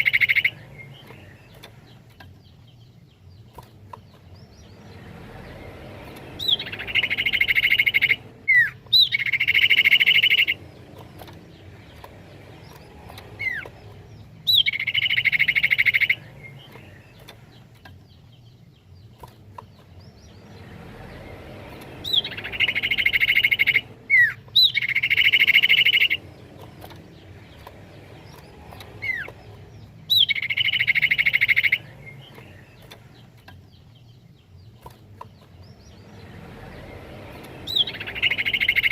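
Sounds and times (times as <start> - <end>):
bird buzzing trills: 20.3 - 33.3.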